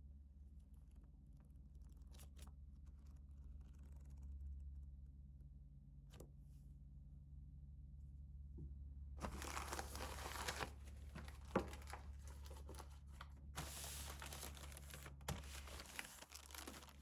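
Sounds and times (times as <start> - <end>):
packaging rustling and clicking: 9.2 - 17.0.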